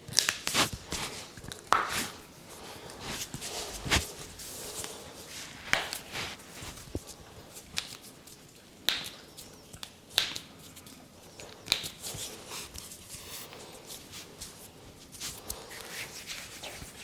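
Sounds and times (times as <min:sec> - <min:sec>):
hands slapping and snapping: 0:00.1 - 0:02.2, 0:05.6 - 0:10.9, 0:11.5 - 0:12.3
faint rubbing: 0:01.9 - 0:07.2.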